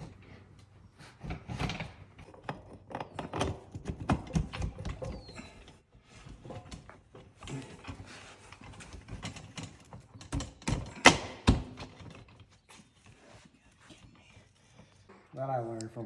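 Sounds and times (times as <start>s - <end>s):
metal parts clanking and rubbing: 4.8s - 13.0s.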